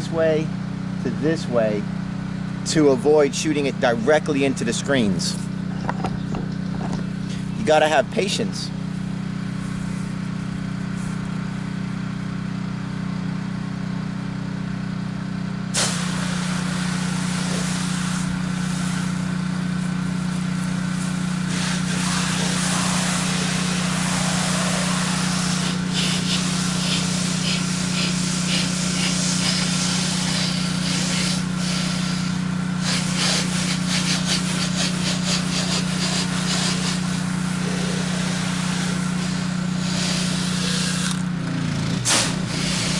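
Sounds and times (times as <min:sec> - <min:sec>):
pressure washer engine running: 0:00.0 - 0:42.9
hiss of spraying water: 0:15.8 - 0:41.1, 0:42.0 - 0:42.9.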